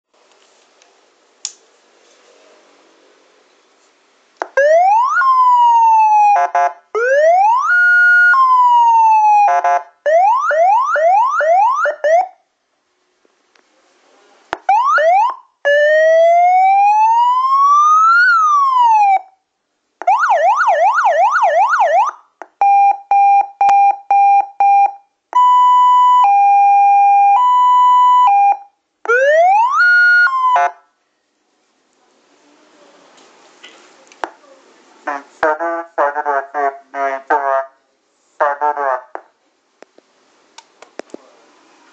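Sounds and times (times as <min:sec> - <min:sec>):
electronic siren wails and yelps: 0:04.6 - 0:12.4, 0:14.6 - 0:19.4, 0:20.0 - 0:30.8.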